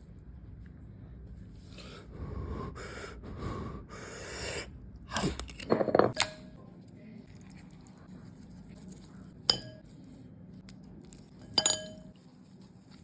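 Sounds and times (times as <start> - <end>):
utensils clinking against dish: 9.5 - 9.9, 11.4 - 12.2.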